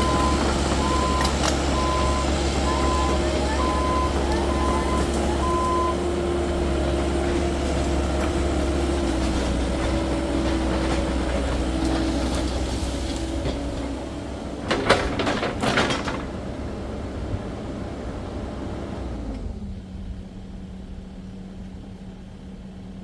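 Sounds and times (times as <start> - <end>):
mini excavator running with whine: 0.0 - 23.0
metal clanks and knocks: 14.6 - 16.4.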